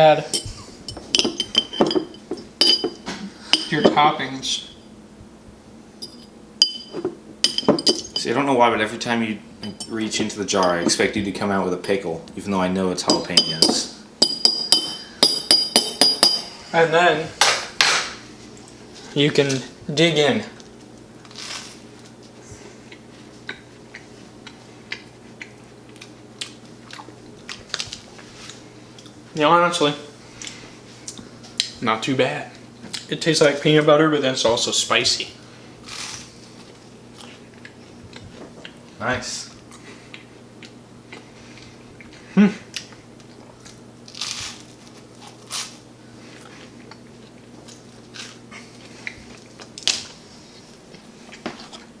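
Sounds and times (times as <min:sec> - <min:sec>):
low steady hum: 0:00.0 - 0:52.0
toast crunching: 0:20.6 - 0:22.4, 0:39.6 - 0:51.9
chewing crunchy toast: 0:20.6 - 0:29.2.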